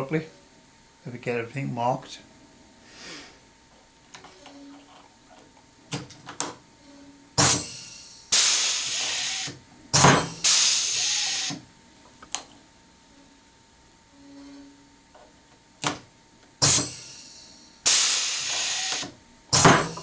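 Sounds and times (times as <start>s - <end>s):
air hissing: 7.4s - 11.6s, 16.6s - 20.0s.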